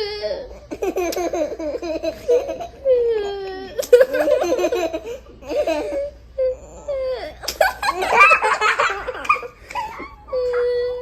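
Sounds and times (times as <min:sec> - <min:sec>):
young child laughing: 0:00.7 - 0:02.8, 0:07.4 - 0:11.0.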